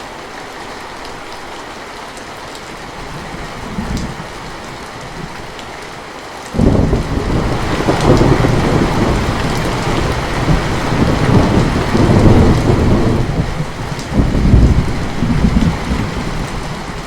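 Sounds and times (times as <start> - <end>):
steady rain: 0.0 - 17.0
thunder rolling: 6.6 - 17.0.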